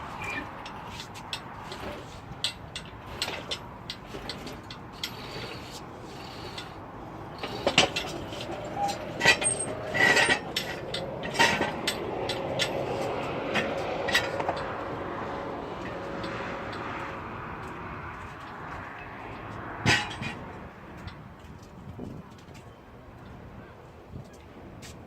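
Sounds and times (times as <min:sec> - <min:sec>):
metal tools clinking and knocking: 0:07.4 - 0:14.7, 0:19.8 - 0:20.4.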